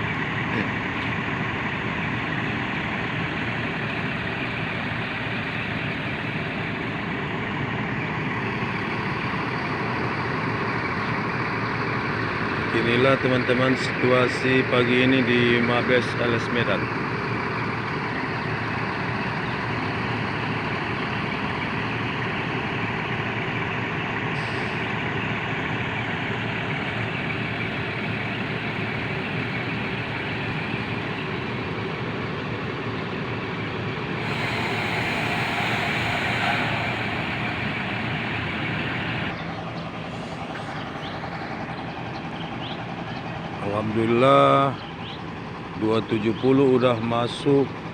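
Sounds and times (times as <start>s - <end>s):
bus diesel engine running: 0.0s - 47.9s
hiss: 34.2s - 39.3s.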